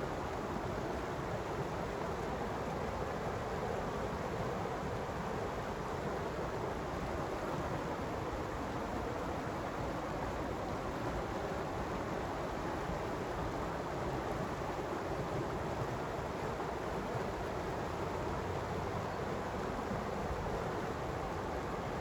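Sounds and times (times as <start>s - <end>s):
creek water flowing: 0.0s - 22.0s.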